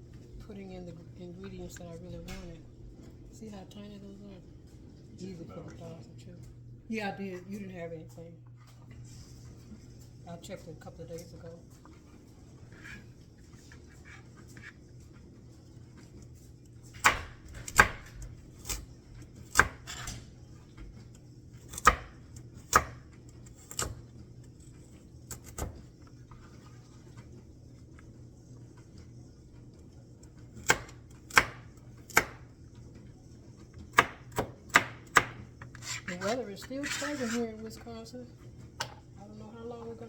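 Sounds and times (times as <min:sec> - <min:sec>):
knife chopping on cutting board: 0:17.0 - 0:18.8, 0:19.4 - 0:20.2, 0:21.7 - 0:24.0, 0:30.6 - 0:32.4, 0:33.9 - 0:37.4.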